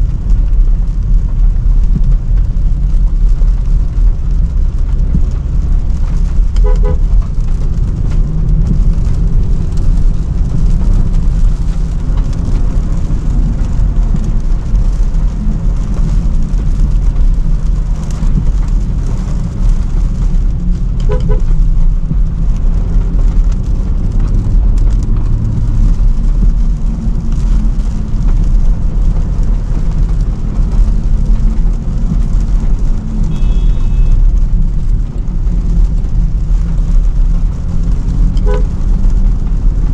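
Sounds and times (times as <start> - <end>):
car engine and road noise: 0.0 - 39.9
two-note car horn: 6.6 - 7.0, 21.1 - 21.5, 33.3 - 34.2, 38.4 - 38.7.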